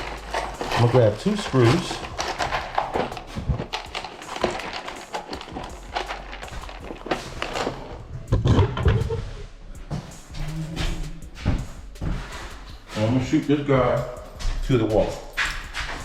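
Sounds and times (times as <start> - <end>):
screws and metal hardware clicking: 0.0 - 8.0, 12.5 - 16.0.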